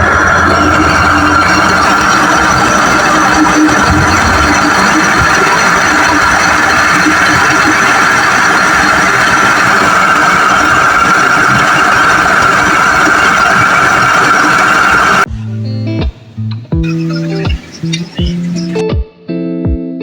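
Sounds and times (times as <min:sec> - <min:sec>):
washing machine drone and whine: 0:00.0 - 0:15.3
guitar music: 0:15.3 - 0:20.0.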